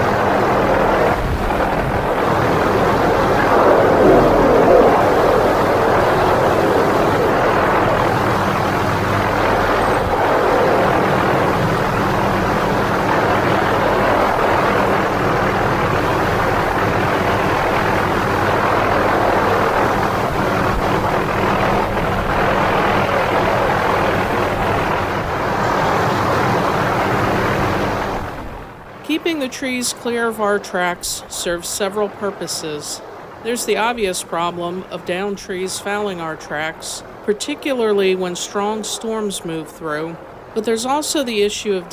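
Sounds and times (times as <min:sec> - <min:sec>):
helicopter engine and rotor: 0:00.0 - 0:29.0, 0:32.0 - 0:41.7
rush of air noise: 0:00.0 - 0:29.0.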